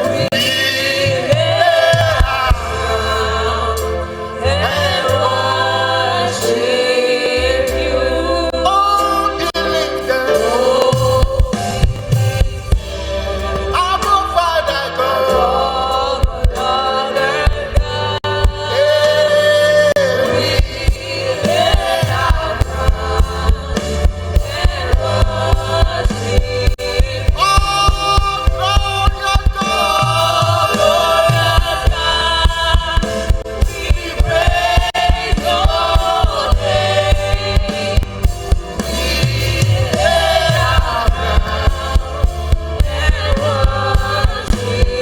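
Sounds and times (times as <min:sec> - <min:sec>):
drum kit beat: 0:00.0 - 0:04.5, 0:10.6 - 0:14.4, 0:16.0 - 0:18.8, 0:20.5 - 0:45.0
choir singing melody: 0:00.0 - 0:45.0.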